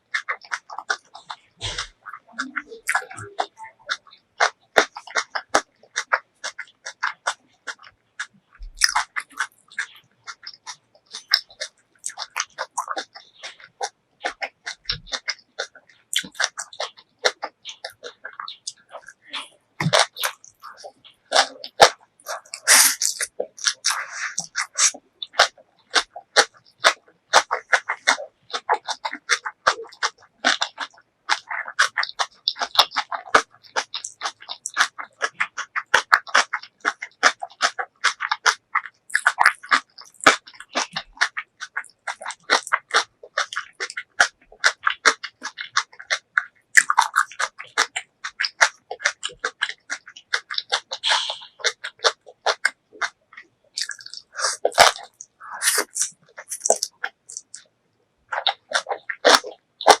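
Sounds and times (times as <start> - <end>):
wet chewing and crunching: 0.0 - 60.0
slurping noodles: 0.5 - 7.9, 53.8 - 57.6.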